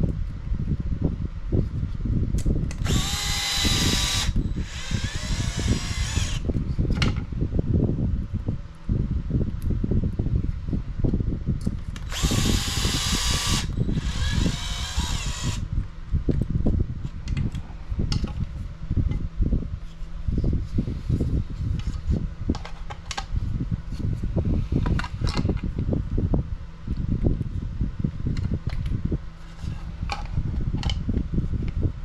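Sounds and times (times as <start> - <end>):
electric screwdriver driving screws: 2.7 - 6.5, 12.0 - 15.7
small clicks of tools handled: 21.8 - 23.3, 29.6 - 31.0.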